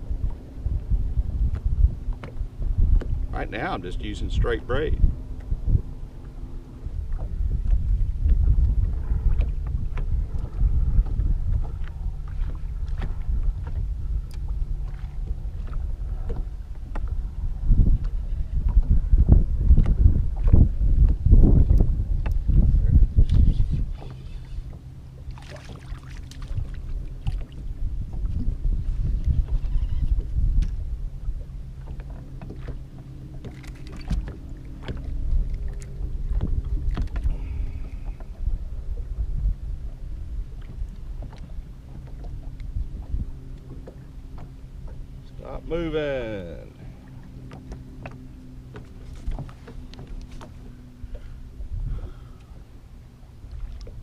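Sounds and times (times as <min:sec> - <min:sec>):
steady low hum: 0:00.0 - 0:54.0
wind buffeting microphone: 0:00.0 - 0:54.0.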